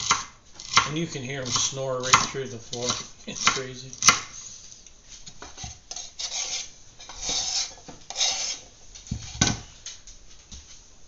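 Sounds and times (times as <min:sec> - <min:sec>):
knife cutting celery on board: 0:00.0 - 0:04.4, 0:05.5 - 0:08.6.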